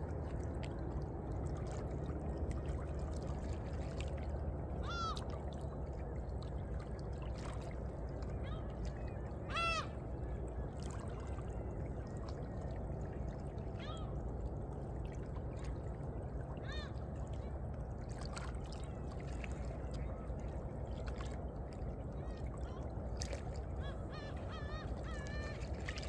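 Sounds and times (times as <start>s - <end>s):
bird calling: 9.5s - 10.0s, 23.8s - 26.0s
water lapping among rocks: 14.4s - 26.0s.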